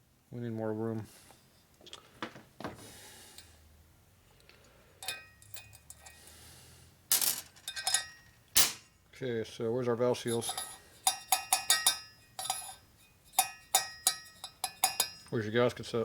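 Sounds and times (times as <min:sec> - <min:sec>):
metal tools clinking on workbench: 0:05.0 - 0:06.2, 0:07.1 - 0:08.9, 0:10.2 - 0:15.6.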